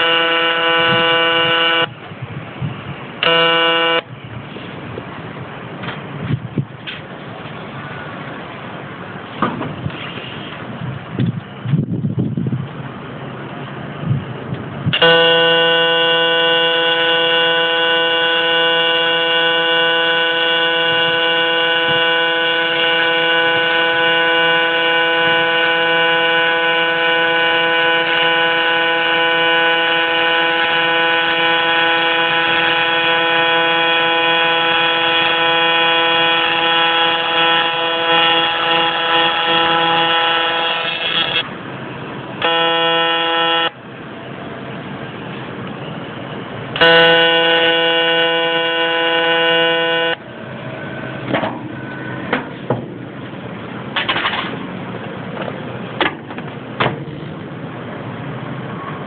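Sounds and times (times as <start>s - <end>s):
welding arc buzzing: 0.0s - 2.0s, 3.2s - 4.1s, 15.0s - 41.5s, 42.4s - 43.8s, 46.8s - 50.2s.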